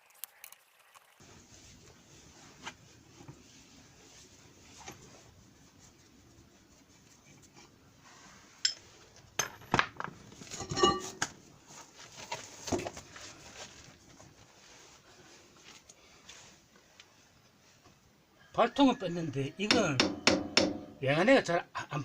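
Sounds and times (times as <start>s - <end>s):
metal tools clinking: 10.5s - 11.2s.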